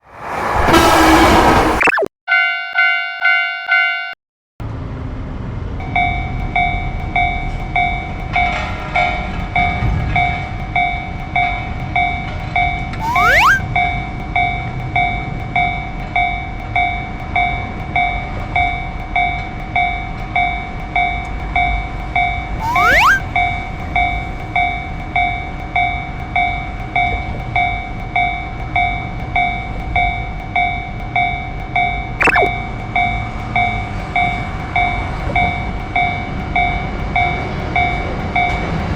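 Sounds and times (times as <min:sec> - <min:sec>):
passing train rumble: 0:00.0 - 0:01.8, 0:04.6 - 0:13.0, 0:13.6 - 0:22.6, 0:23.2 - 0:38.9
railroad crossing bell ringing: 0:02.3 - 0:04.2, 0:05.8 - 0:13.1
rising sweep: 0:13.0 - 0:13.6.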